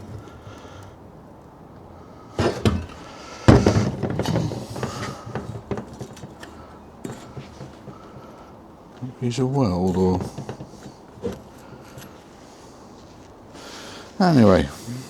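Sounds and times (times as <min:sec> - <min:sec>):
rattling knocks: 0:02.3 - 0:12.4
metal tools clanking: 0:02.4 - 0:12.3.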